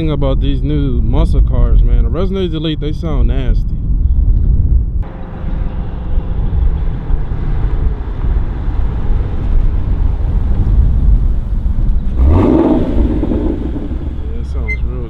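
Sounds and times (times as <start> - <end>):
car exhaust rumbling: 4.0 - 15.0.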